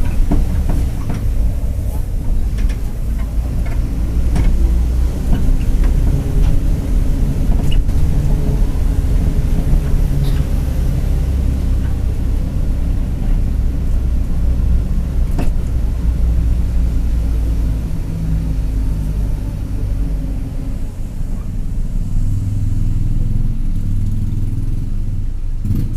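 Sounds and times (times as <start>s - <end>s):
bus engine drone: 0.0s - 25.9s.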